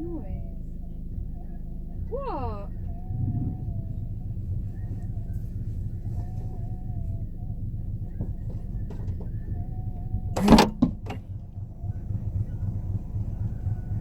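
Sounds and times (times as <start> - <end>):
steady low rumble: 0.0 - 14.0
car door opening clunk: 10.3 - 14.0.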